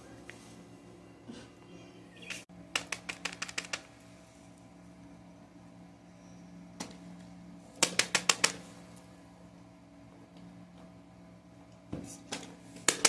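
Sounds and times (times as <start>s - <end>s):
faint steady hum: 0.0s - 13.0s
sharp quick clicks: 2.3s - 3.9s, 7.8s - 8.6s.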